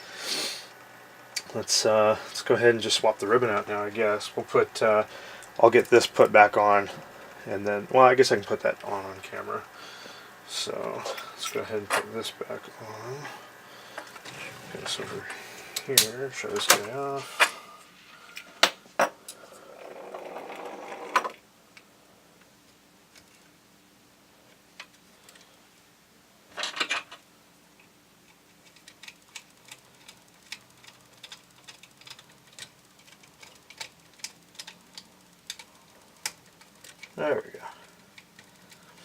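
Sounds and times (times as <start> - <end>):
plastic parts clattering: 26.5 - 27.2, 28.6 - 37.2
plastic parts scraping rustle: 28.5 - 39.0.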